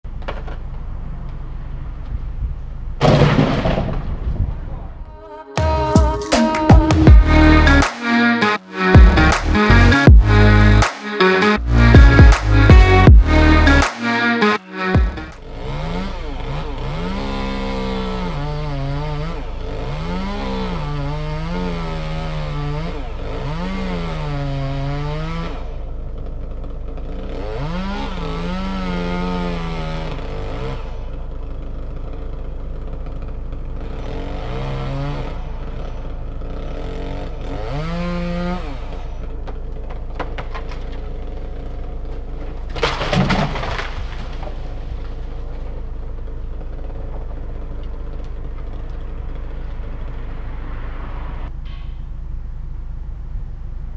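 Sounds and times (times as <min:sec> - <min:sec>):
engine idling drone: 0:05.0 - 0:24.3
chainsaw revving: 0:05.6 - 0:50.4.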